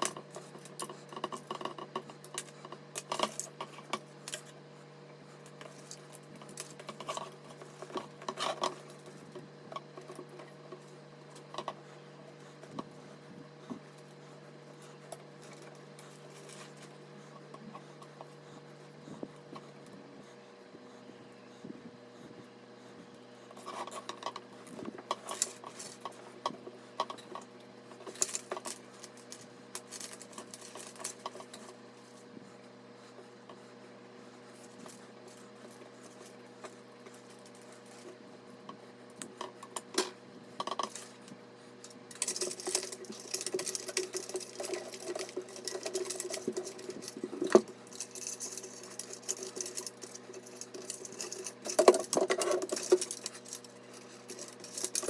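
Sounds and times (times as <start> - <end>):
faint steady hum: 0.0 - 55.0
small parts clicking and clinking: 23.6 - 31.8, 39.2 - 55.0.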